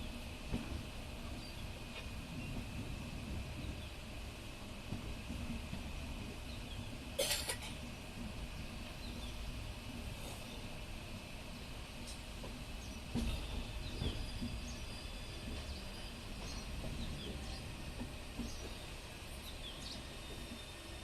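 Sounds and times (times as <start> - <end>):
small birds chirping: 3.5 - 4.2, 8.7 - 9.6, 11.6 - 21.0.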